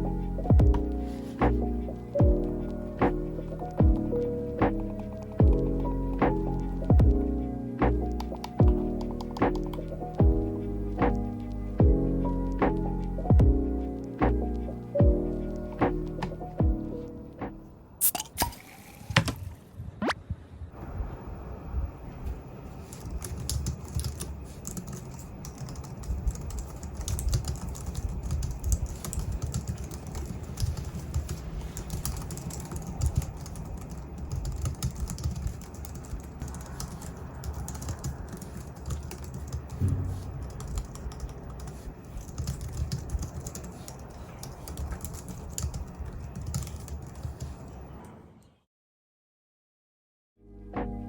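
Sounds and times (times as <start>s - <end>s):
keyboard typing: 0.5s - 10.4s, 22.8s - 47.8s.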